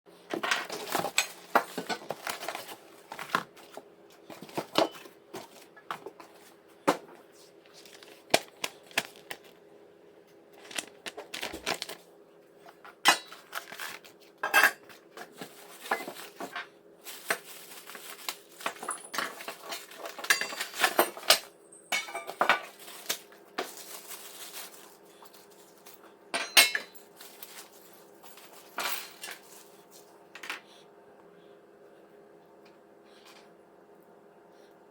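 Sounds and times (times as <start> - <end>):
faint steady hum: 0.1 - 34.9
metal parts clinking and clanking: 18.6 - 23.2.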